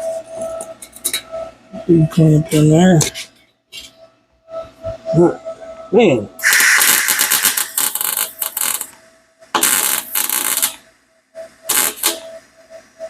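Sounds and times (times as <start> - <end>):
welder arc crackling: 6.4 - 9.0, 9.6 - 10.8, 11.7 - 12.3.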